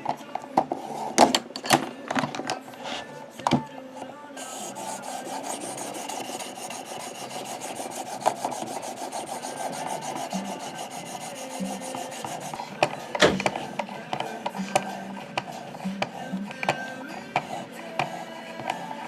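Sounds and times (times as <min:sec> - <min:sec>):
knife blade scraping on ceramic hone: 0:04.4 - 0:12.8.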